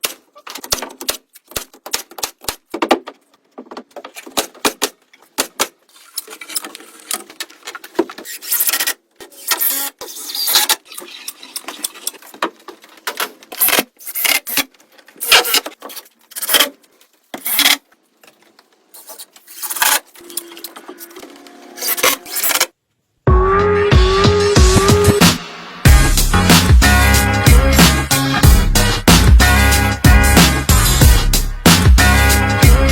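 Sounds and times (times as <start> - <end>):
objects scraping and rubbing: 5.8 - 22.8.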